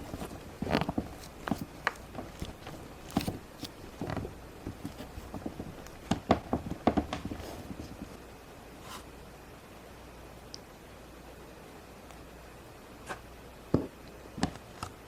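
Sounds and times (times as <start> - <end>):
hands working modeling clay: 0.0 - 9.2.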